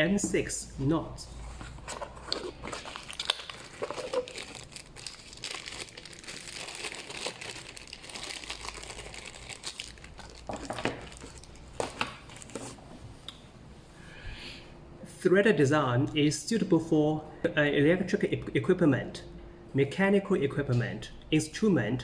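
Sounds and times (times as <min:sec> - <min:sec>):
plastic packaging crinkling: 0:01.6 - 0:12.8.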